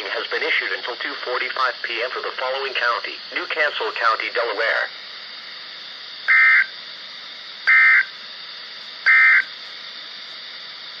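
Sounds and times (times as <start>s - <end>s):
steady radio hiss: 0.0s - 11.0s
buzzy warbling data chirps: 6.3s - 6.7s, 7.7s - 8.1s, 9.1s - 9.5s.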